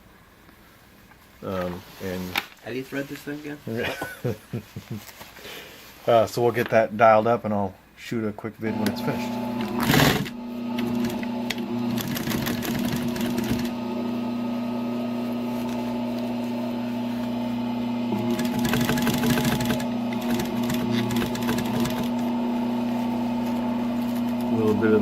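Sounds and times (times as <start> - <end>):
sewing machine stitching: 8.8 - 13.8, 18.1 - 22.3.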